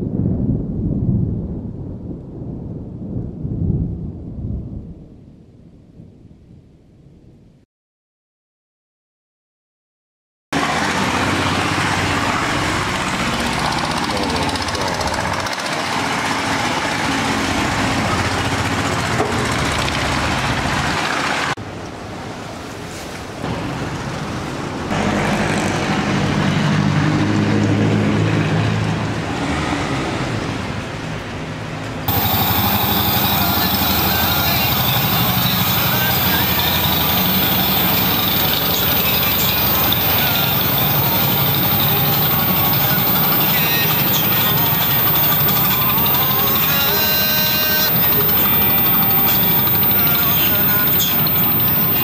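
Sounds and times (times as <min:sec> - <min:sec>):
motorboat engine: 0:10.6 - 0:21.3, 0:32.1 - 0:52.0
water noise: 0:32.1 - 0:52.0.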